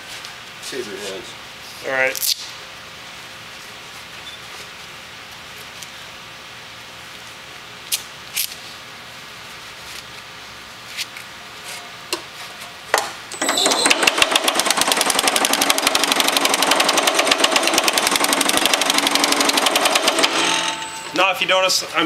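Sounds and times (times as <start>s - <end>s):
power hammer pounding sheet metal: 13.4s - 21.3s.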